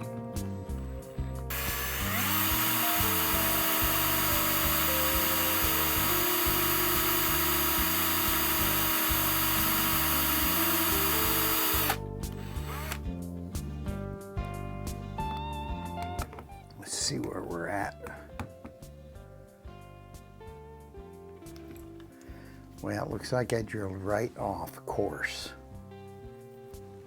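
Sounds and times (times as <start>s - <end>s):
background music with bass line: 0.0s - 27.0s
electric drill drilling into metal: 1.5s - 13.0s.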